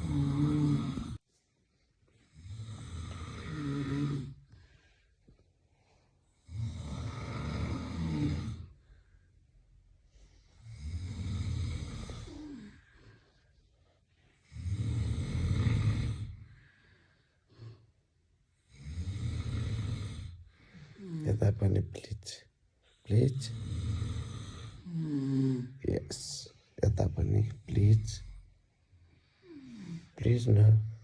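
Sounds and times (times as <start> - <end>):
man snoring loudly: 0.0 - 1.2, 2.4 - 4.4, 6.4 - 8.7, 10.7 - 12.7, 14.5 - 16.4, 18.7 - 20.4, 23.2 - 25.8.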